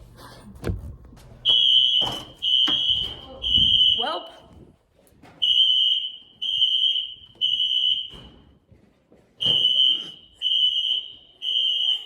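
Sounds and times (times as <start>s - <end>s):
fire alarm beeps: 1.4s - 4.2s, 5.4s - 8.6s, 9.4s - 12.0s.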